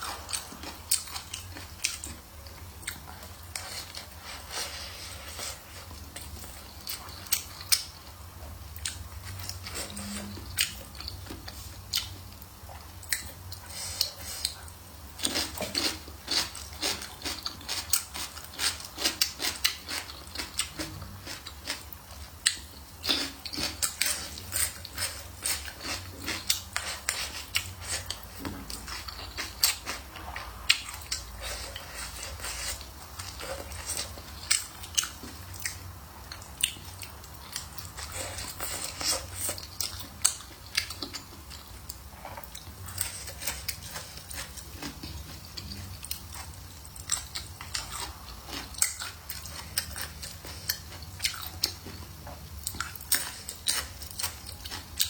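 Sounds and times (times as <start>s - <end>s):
person chewing and smacking food: 0.0s - 55.0s.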